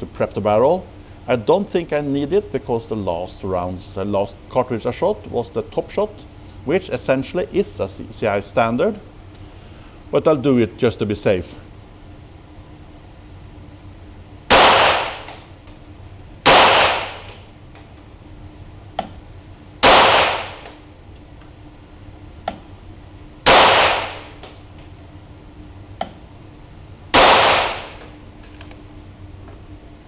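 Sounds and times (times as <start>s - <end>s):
pistol shots with echo: 14.5s - 15.4s, 16.5s - 17.4s, 19.8s - 20.7s, 23.5s - 24.4s, 27.2s - 28.0s.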